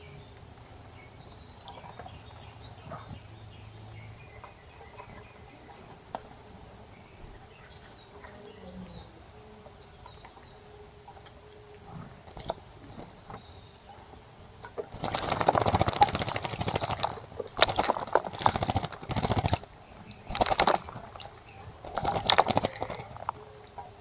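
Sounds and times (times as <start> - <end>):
bird splashing in water: 14.7 - 23.4.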